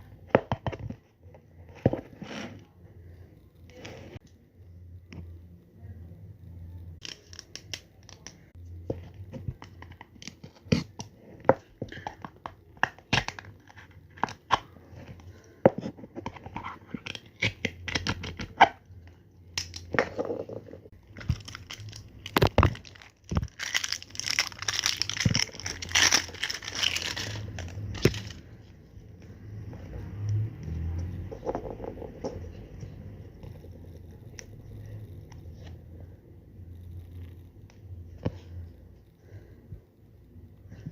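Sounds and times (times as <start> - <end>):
packaging tearing and crinkling: 21.1 - 28.4.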